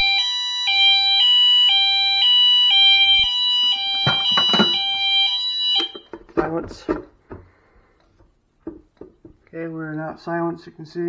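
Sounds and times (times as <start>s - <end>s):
fire alarm horn high-low tone: 0.0s - 6.2s.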